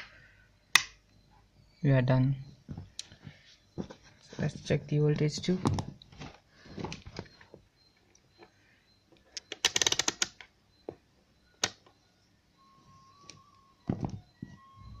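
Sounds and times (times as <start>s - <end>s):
faint steady tone: 0.0s - 9.6s, 10.3s - 15.0s
sharp plastic clicks: 0.7s - 1.0s, 9.2s - 10.5s, 11.6s - 11.9s.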